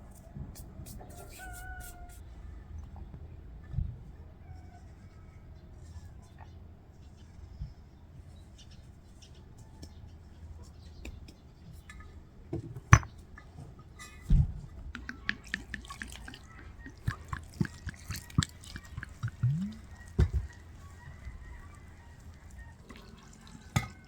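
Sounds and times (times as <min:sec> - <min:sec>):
small clicks and taps: 0:14.9 - 0:20.4
water dripping and splashing: 0:15.0 - 0:24.0.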